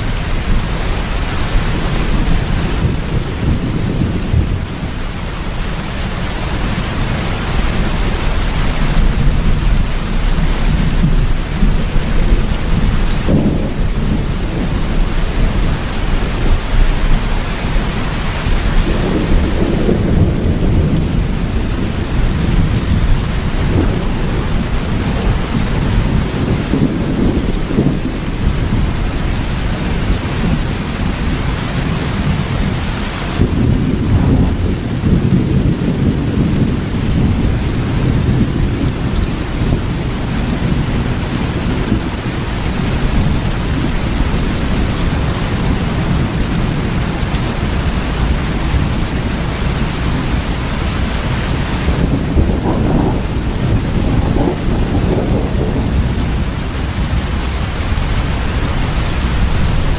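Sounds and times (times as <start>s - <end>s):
steady rain: 0.0s - 59.9s
thunder rumbling: 0.0s - 59.9s.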